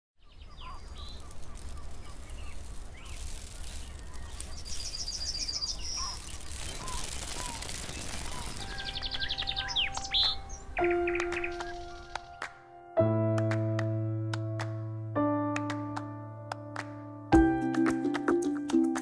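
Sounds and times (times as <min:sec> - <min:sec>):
bird trill: 0:00.2 - 0:12.4
birds chirping: 0:00.2 - 0:12.8
music: 0:08.7 - 0:19.0.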